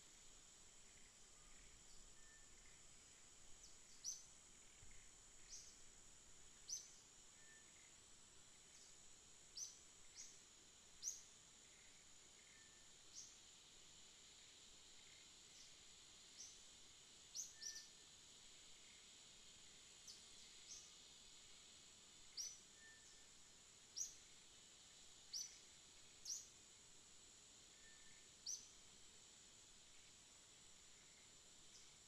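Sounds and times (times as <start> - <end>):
high-pitched insect drone: 17.3 - 18.0, 30.8 - 32.0.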